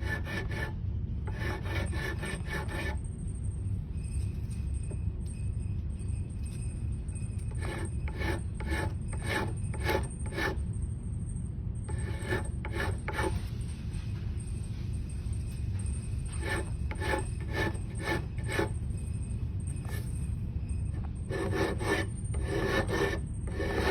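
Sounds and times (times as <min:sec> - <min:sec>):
file scraping: 0:00.0 - 0:03.0, 0:07.5 - 0:10.6, 0:11.9 - 0:13.5, 0:16.3 - 0:18.8, 0:20.9 - 0:23.9
steady low hum: 0:00.0 - 0:23.9.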